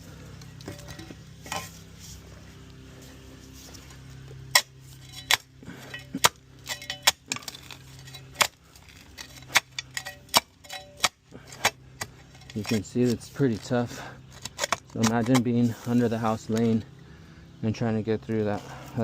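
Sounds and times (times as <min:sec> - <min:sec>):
steady low hum: 0:00.0 - 0:19.0
shovel clanking into hard ground: 0:00.6 - 0:01.8, 0:04.5 - 0:16.0.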